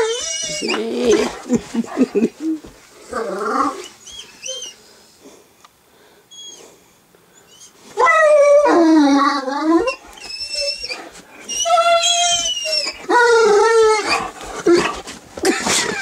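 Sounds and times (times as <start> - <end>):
puppy howling: 0.0 - 1.5, 8.0 - 15.0.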